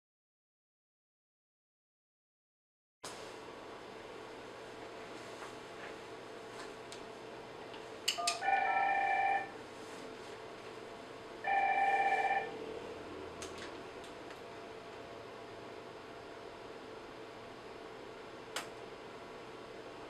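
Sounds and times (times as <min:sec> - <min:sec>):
telephone ringing: 0:08.2 - 0:09.6, 0:11.4 - 0:12.6.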